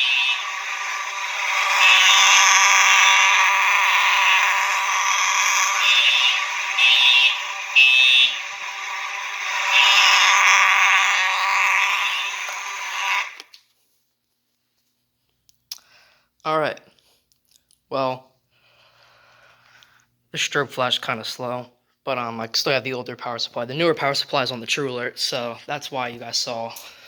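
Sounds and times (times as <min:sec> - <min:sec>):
fire alarm horns: 0:00.0 - 0:13.5.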